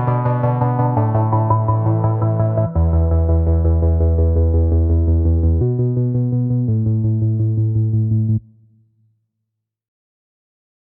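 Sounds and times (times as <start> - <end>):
electronic synthesizer music: 0.0 - 7.0.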